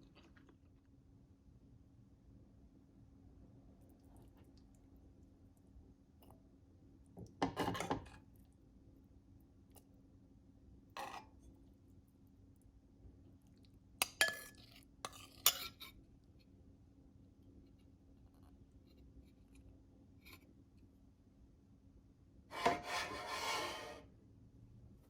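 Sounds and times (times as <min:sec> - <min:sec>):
tableware scraping: 0:22.5 - 0:24.1.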